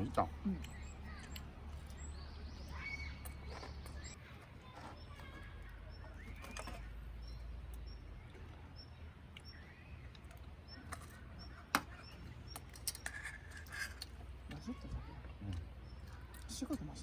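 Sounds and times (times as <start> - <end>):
faint bird calls: 0.3 - 13.8.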